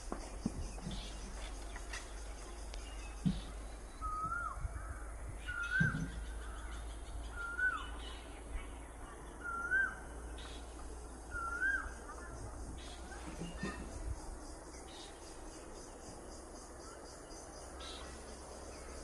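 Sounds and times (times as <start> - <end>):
bird whistling: 4.0 - 4.6.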